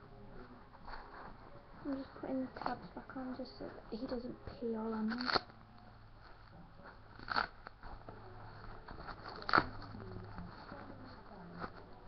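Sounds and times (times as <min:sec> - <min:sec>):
nappy tabs rustling and crackling: 0:05.0 - 0:05.5.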